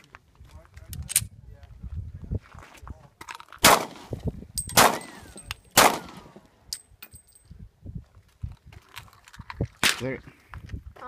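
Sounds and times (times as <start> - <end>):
pistol shots: 3.6 - 6.4.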